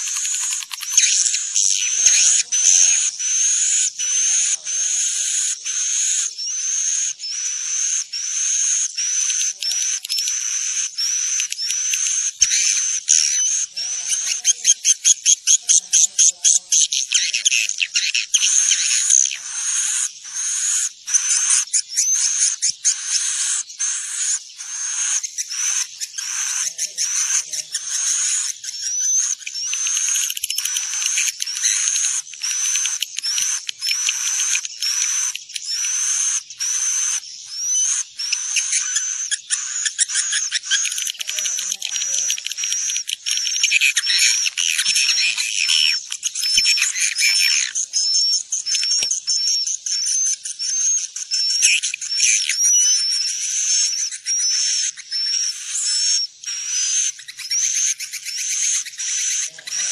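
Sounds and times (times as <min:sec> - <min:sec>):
swiftlets chirping: 0:00.0 - 0:02.9, 0:25.2 - 0:50.8.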